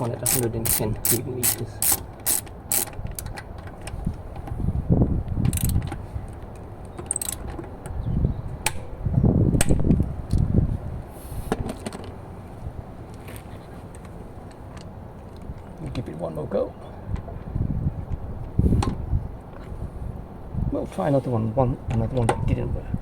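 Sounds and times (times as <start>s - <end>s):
wrench clicking on metal: 0.0s - 3.4s, 5.5s - 5.9s, 7.1s - 7.4s.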